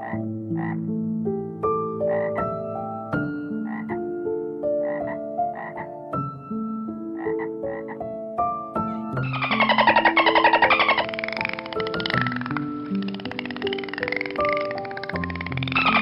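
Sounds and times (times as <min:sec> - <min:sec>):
frog croaking: 0:00.0 - 0:01.0, 0:02.1 - 0:02.5, 0:03.5 - 0:06.2, 0:07.0 - 0:08.2, 0:08.8 - 0:16.0.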